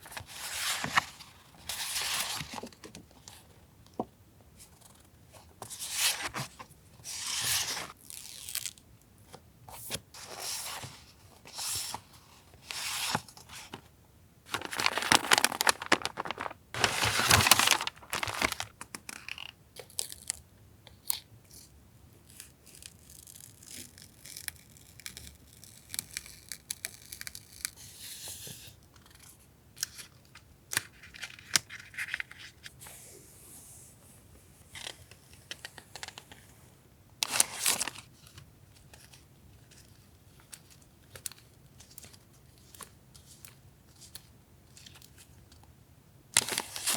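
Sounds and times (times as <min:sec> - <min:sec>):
packaging being torn and crinkled: 0:14.5 - 0:20.4.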